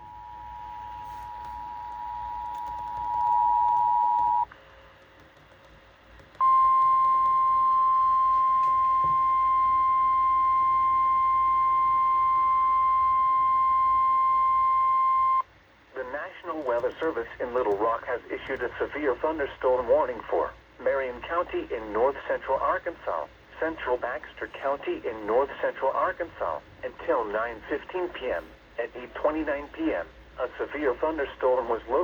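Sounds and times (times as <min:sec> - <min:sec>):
two-tone attention signal: 0:00.0 - 0:04.4, 0:06.4 - 0:15.4
steady warning alarm tone: 0:00.0 - 0:04.5, 0:06.4 - 0:15.4.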